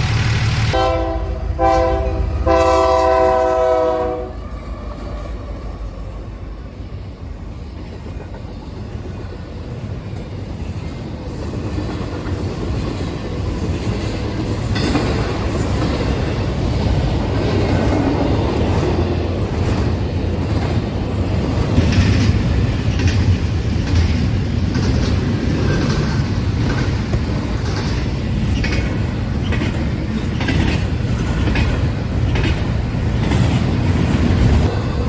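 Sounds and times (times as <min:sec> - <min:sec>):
loud horn chord blasts: 0:00.0 - 0:04.4.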